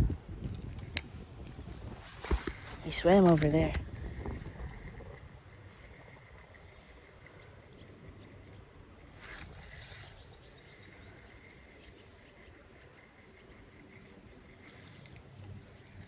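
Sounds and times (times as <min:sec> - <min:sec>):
steady low rumble: 0:00.0 - 0:09.2.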